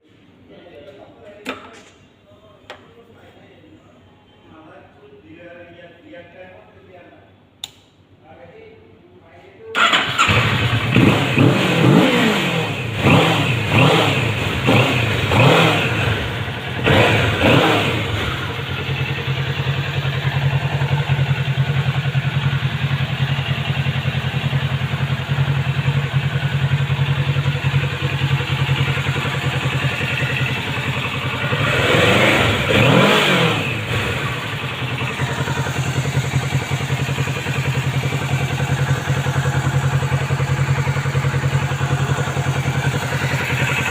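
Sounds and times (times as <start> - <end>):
motorcycle engine revving and idling: 9.8 - 43.9.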